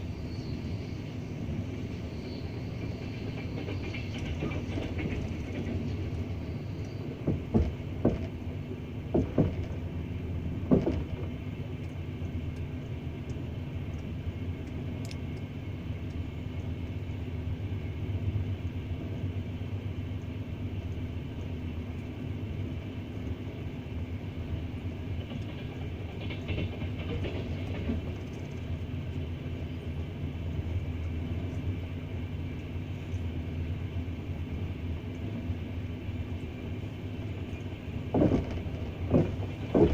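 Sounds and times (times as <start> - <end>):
train rumbling on rails: 0.0 - 39.9
wheel clacks over rail joints: 2.9 - 12.0, 25.2 - 28.8, 37.6 - 39.9.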